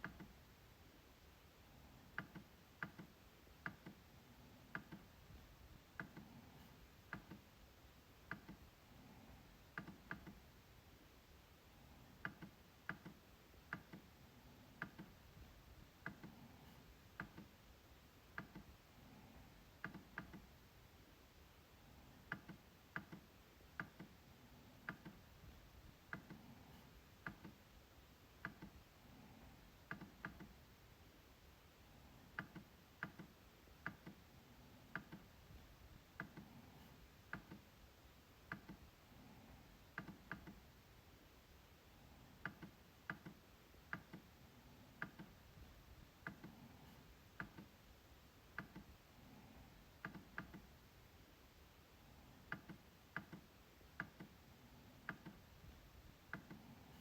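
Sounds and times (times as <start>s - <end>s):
faint steady hiss: 0.0s - 57.0s
trackpad clicks: 2.1s - 4.0s, 4.7s - 5.1s, 7.1s - 7.4s, 8.3s - 8.7s, 9.7s - 10.4s, 12.2s - 14.1s, 14.8s - 15.2s, 19.8s - 20.5s, 22.3s - 24.2s, 32.4s - 34.2s, 39.9s - 40.6s, 42.4s - 44.3s, 45.0s - 45.4s, 48.5s - 48.9s, 50.0s - 50.7s, 52.5s - 54.4s.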